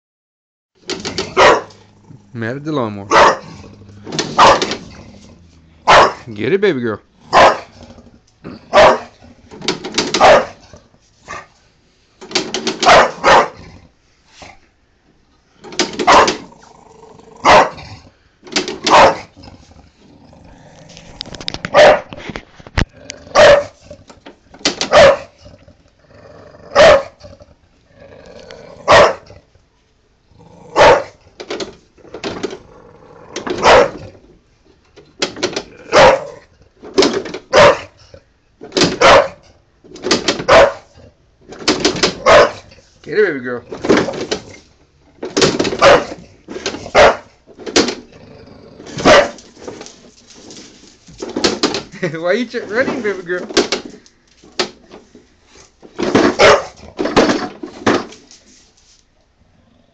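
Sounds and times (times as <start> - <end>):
dog barking angrily: 1.1 - 1.9, 3.1 - 5.0, 5.8 - 6.3, 7.2 - 7.8, 8.5 - 9.3, 10.0 - 11.6, 12.6 - 13.7, 15.9 - 16.5, 17.4 - 18.0, 18.8 - 19.4, 21.7 - 22.2, 23.2 - 24.0, 24.7 - 25.4, 26.7 - 27.3, 28.8 - 29.4, 30.7 - 31.2, 33.4 - 34.1, 35.8 - 36.5, 37.4 - 38.0, 38.8 - 39.6, 40.2 - 41.0, 42.0 - 42.7, 45.6 - 47.4, 48.9 - 49.6, 56.1 - 57.0.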